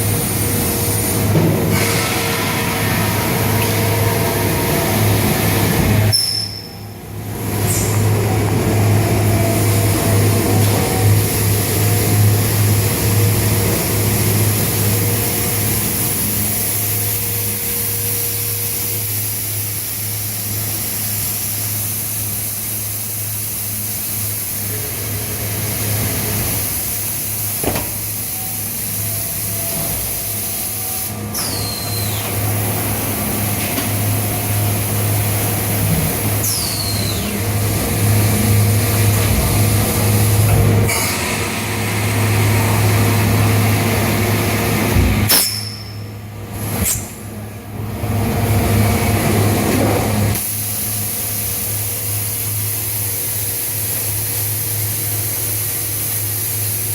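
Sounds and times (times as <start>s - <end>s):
forming machine hum: 0.0s - 51.1s
machine hiss: 0.0s - 56.9s
falling high whistles: 36.4s - 37.4s.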